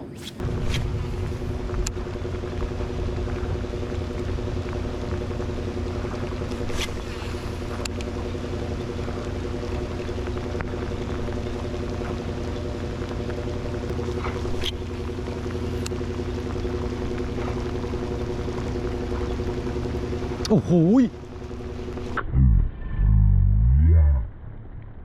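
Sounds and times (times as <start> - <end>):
boat motor humming: 0.0 - 25.0.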